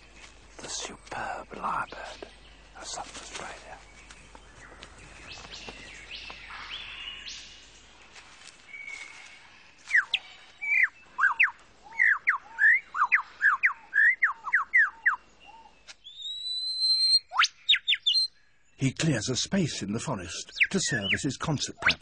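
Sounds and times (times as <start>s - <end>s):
faint bird calls: 0.0s - 18.4s
lyrebird whistled notes: 16.1s - 18.3s.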